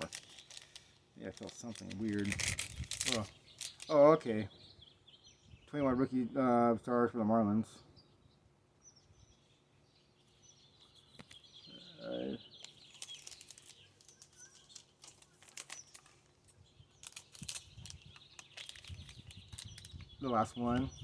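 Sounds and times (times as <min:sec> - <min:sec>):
trading cards being handled: 0:00.0 - 0:04.0, 0:12.6 - 0:20.0
birds chirping faintly: 0:00.0 - 0:21.0.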